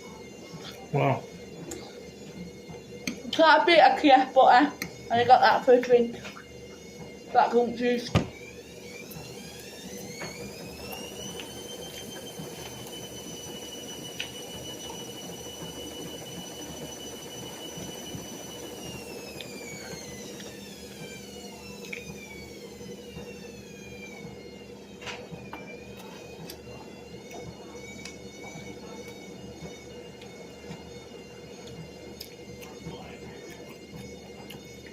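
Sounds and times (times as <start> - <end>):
small motor whining: 0.0 - 34.9.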